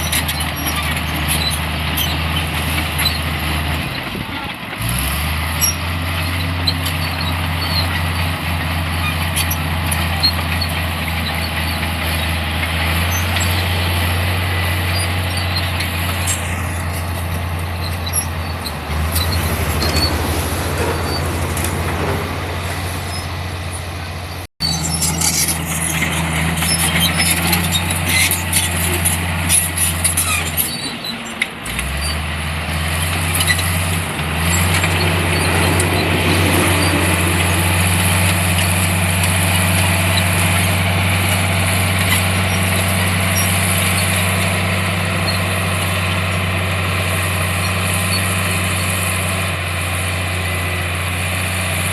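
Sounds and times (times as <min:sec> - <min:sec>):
heavy machine diesel engine: 0:00.0 - 0:51.9
metallic clanks and rattles: 0:15.6 - 0:31.0.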